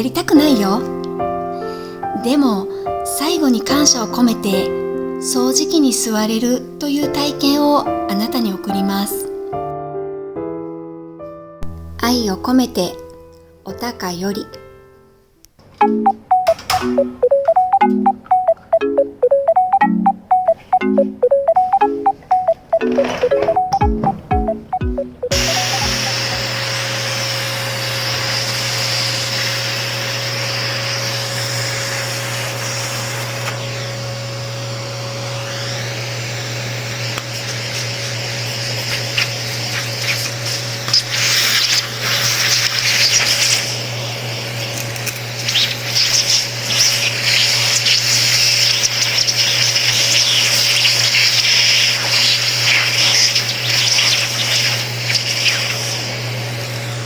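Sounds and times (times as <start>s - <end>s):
vacuum cleaner running: 25.3s - 57.0s.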